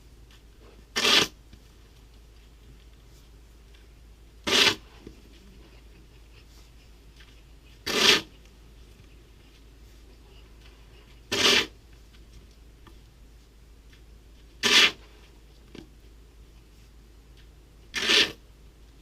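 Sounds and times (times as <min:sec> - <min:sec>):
snow shovel scraping deep snow: 0:01.0 - 0:01.4, 0:04.5 - 0:04.9, 0:07.8 - 0:08.3, 0:11.3 - 0:11.8, 0:14.6 - 0:15.1, 0:17.9 - 0:18.4.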